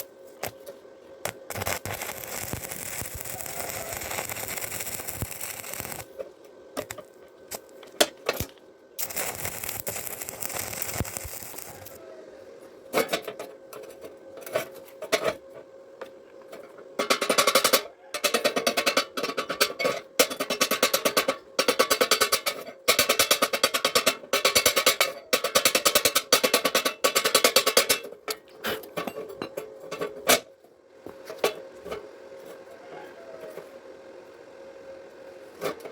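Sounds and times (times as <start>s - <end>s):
arc welding crackling and hissing: 0.0s - 13.2s, 17.0s - 28.0s.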